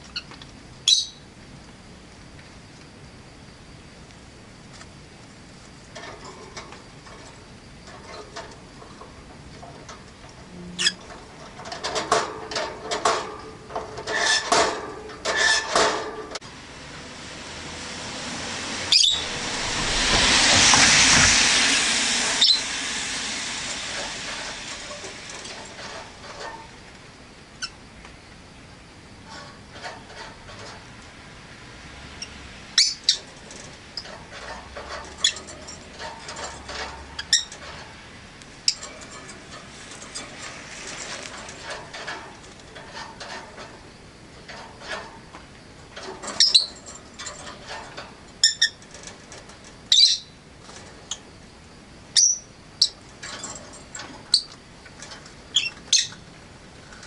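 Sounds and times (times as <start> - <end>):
vehicle passing by: 16.4 - 24.9
lovebirds chirping: 18.9 - 19.3.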